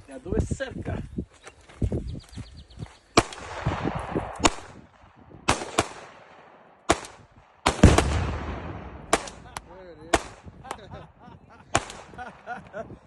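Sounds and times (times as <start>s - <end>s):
rifle shots: 3.2s - 10.6s, 11.7s - 12.5s.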